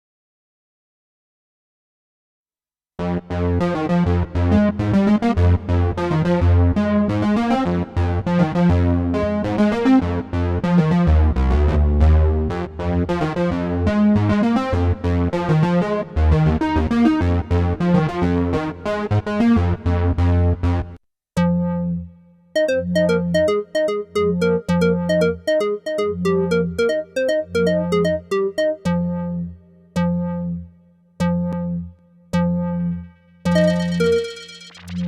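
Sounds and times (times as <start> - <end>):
synthesizer electric piano tone: 22.6 - 29.5, 33.5 - 35.0.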